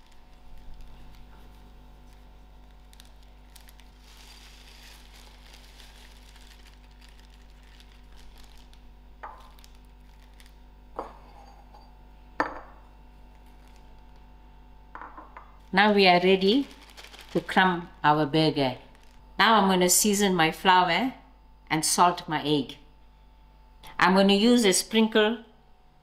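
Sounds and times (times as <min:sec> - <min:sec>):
steady hum: 0:00.0 - 0:26.0
kitchenware clinking on counter: 0:11.0 - 0:12.8.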